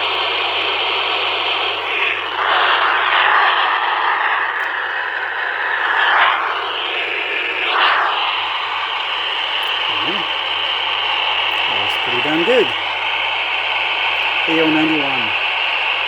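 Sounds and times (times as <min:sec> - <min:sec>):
radio receiver hiss and static: 0:09.6 - 0:10.5, 0:11.5 - 0:13.0, 0:14.2 - 0:15.5.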